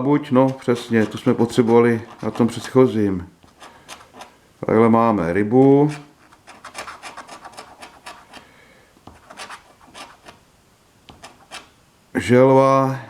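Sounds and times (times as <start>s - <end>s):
scratching lottery ticket coating: 0.2s - 4.4s, 5.7s - 10.4s, 11.1s - 11.8s.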